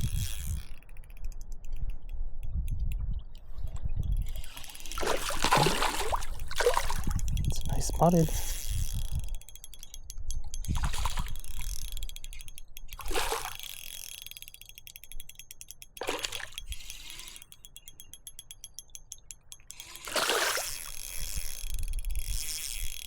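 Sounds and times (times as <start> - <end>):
water splashing: 4.5 - 7.2, 13.0 - 13.6, 16.0 - 16.6, 20.0 - 20.9
faint rapid ticking: 6.1 - 20.1.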